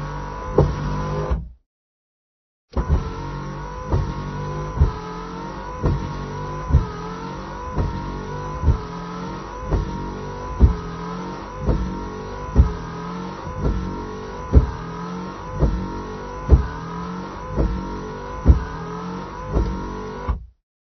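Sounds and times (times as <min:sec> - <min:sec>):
wiper motor whirring: 0:00.0 - 0:01.6, 0:02.7 - 0:20.6
wiper knocking: 0:05.8 - 0:07.1, 0:07.7 - 0:08.0, 0:09.6 - 0:11.0, 0:11.6 - 0:12.9, 0:13.5 - 0:15.0, 0:16.5 - 0:16.8, 0:17.5 - 0:18.8.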